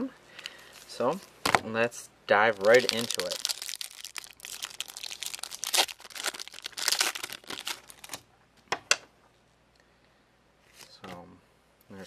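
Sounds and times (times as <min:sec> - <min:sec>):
wrapper crinkling and tearing: 0:02.5 - 0:08.2.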